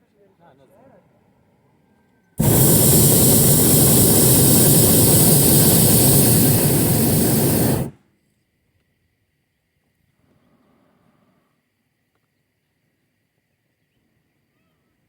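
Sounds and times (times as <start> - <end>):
propane burner blast: 2.4 - 7.9.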